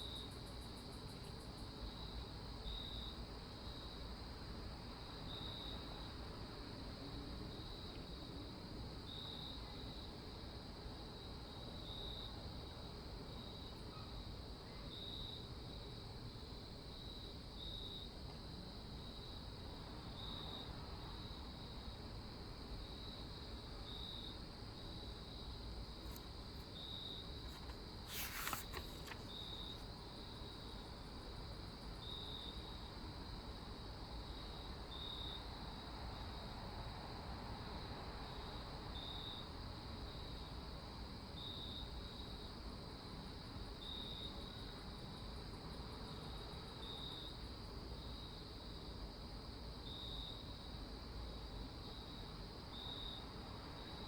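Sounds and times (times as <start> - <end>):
cricket chirps: 0.0 - 54.0
steady hiss: 26.0 - 30.3.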